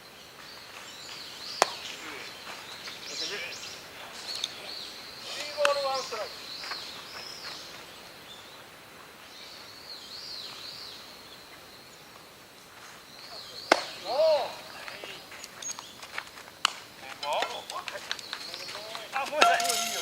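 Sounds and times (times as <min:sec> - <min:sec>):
bat hitting baseball: 0:19.4 - 0:20.0
high wavering chirps: 0:19.4 - 0:20.0.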